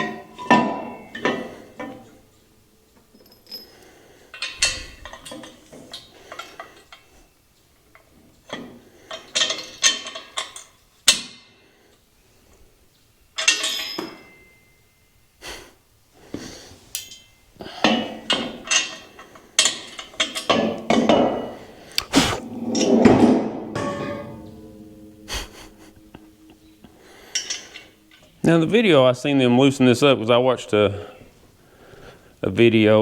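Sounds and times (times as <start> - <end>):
metal parts and tools clinking: 0.0 - 2.2, 2.9 - 7.1, 7.9 - 11.3, 13.4 - 14.8, 16.9 - 22.1, 22.7 - 29.4.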